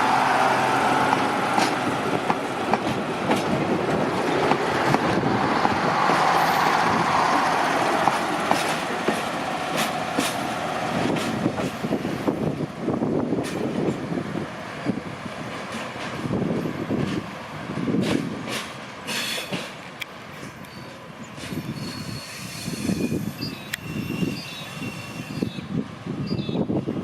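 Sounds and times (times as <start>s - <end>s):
diesel railcar droning: 0.0s - 27.0s
wheels clicking over rail joints: 1.1s - 5.3s, 6.8s - 11.9s.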